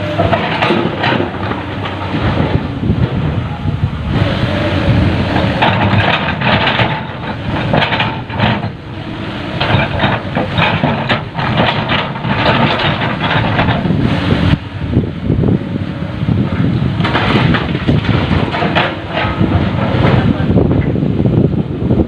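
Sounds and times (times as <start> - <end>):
excavator diesel engine running: 0.0 - 22.0
knocks and clatter: 0.1 - 3.5, 5.3 - 8.8, 9.5 - 14.0, 17.0 - 21.0.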